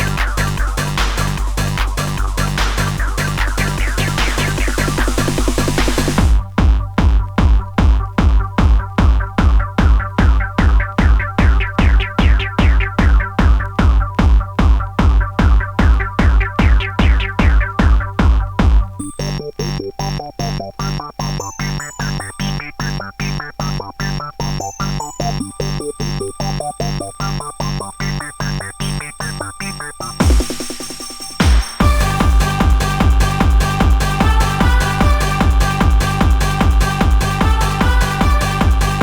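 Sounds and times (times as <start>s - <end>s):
noise wash: 0.0s - 19.0s, 30.2s - 39.0s
drum machine kick: 0.0s - 19.4s, 30.2s - 39.0s
fast electronic dance music: 0.0s - 39.0s
high synth riff: 0.0s - 39.0s
synthesizer stabs: 0.0s - 39.0s.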